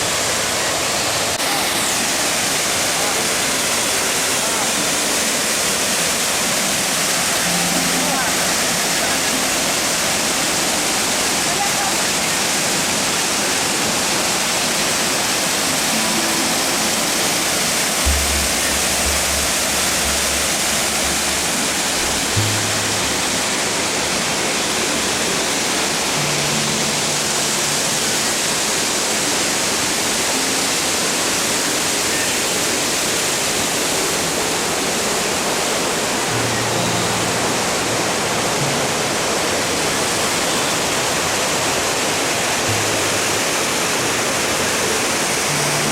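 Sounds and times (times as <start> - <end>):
waterfall rushing: 0.0 - 45.9
low bass notes of music: 15.9 - 25.2.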